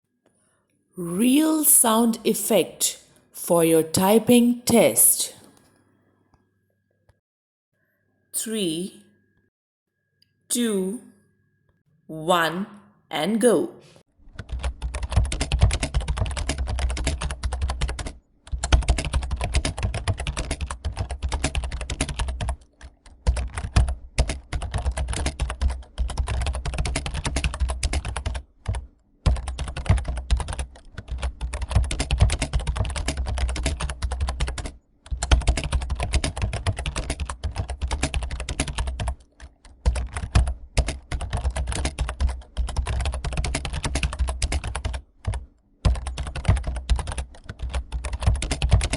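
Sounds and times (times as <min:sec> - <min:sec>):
typing on computer keyboard: 0:14.3 - 0:48.9.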